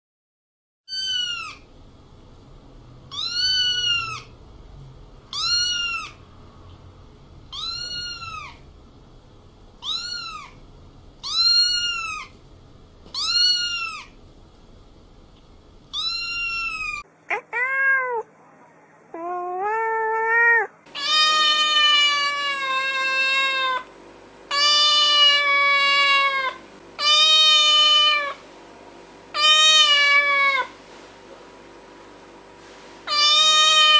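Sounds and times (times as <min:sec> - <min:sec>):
cats meowing: 0:00.9 - 0:01.7, 0:03.1 - 0:04.3, 0:05.3 - 0:06.2, 0:07.5 - 0:08.7, 0:09.8 - 0:10.6, 0:11.2 - 0:12.4, 0:13.1 - 0:14.2, 0:15.9 - 0:18.3, 0:19.1 - 0:23.9, 0:24.5 - 0:28.4, 0:29.4 - 0:30.8, 0:33.1 - 0:33.9.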